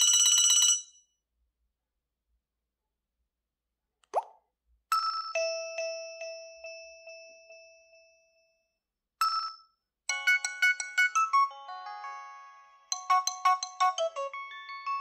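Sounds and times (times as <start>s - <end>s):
chime-like ringtone: 4.9s - 15.0s
fast melodic ringtone: 10.1s - 15.0s.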